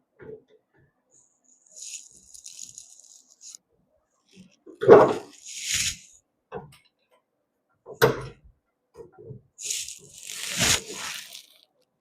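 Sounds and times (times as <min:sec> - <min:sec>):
short hiss: 0:05.3 - 0:06.1.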